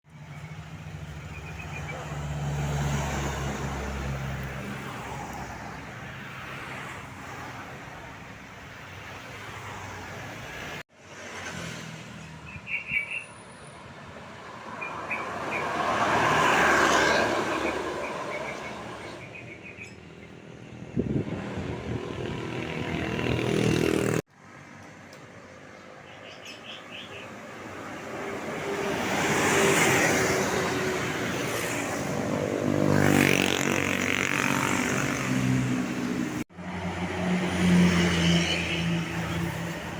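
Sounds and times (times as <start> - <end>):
large vehicles passing: 13.7 - 25.1.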